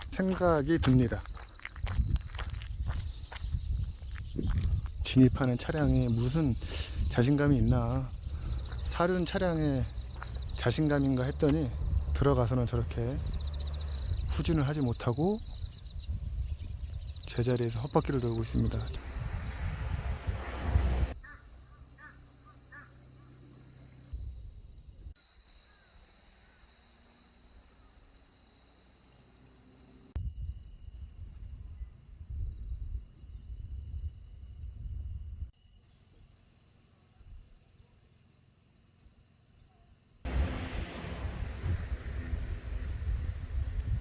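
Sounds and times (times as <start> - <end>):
faint steady high hiss: 40.3 - 44.0
low rumble: 40.3 - 44.0.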